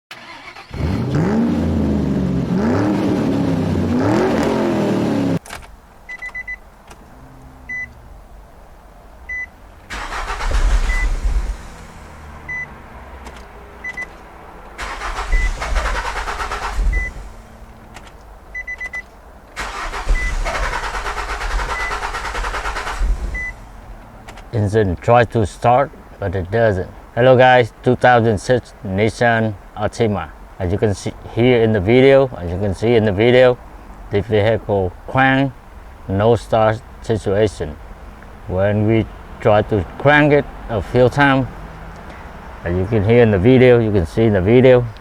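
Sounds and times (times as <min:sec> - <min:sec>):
car engine cranking: 0:00.1 - 0:07.1, 0:09.3 - 0:24.5.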